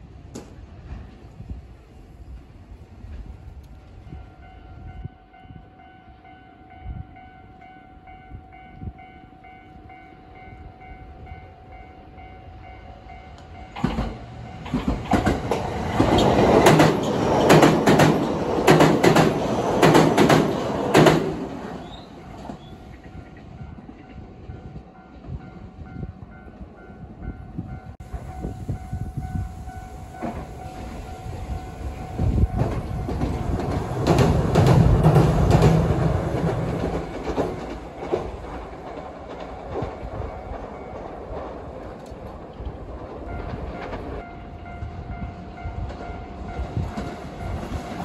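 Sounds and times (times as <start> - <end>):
train wheels clacking: 13.4 - 25.6, 28.0 - 48.0.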